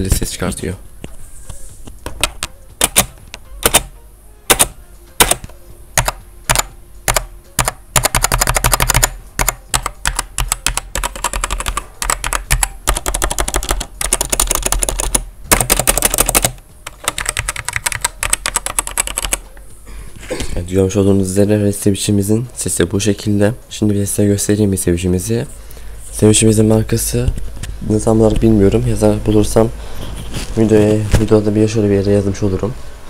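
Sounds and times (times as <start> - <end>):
typing on mechanical keyboard: 6.0 - 19.4.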